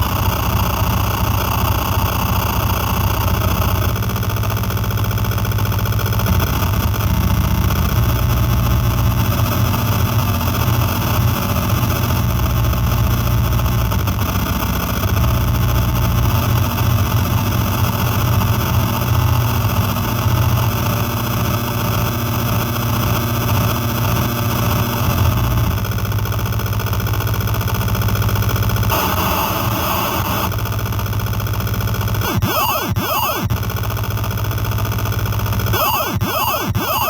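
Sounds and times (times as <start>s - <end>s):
harsh electronic synth drone: 0.0s - 25.9s, 28.6s - 37.0s.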